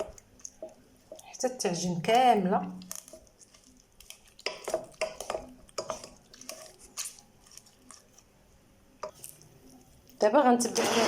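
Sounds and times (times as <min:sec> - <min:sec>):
utensil scraping in saucepan: 0:02.9 - 0:08.4.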